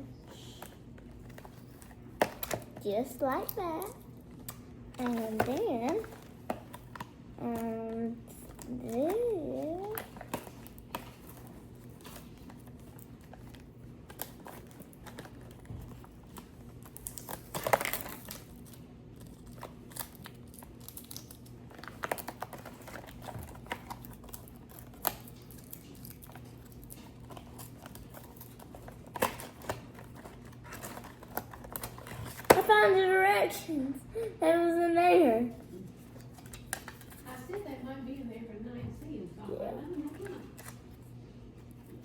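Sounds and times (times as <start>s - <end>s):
faint steady hum: 0.0s - 42.0s
plastic packaging crinkling: 0.6s - 33.0s.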